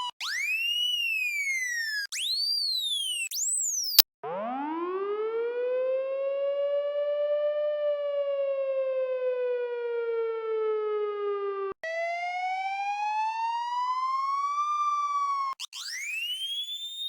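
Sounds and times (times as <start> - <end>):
altered police siren wail: 4.2 - 16.8.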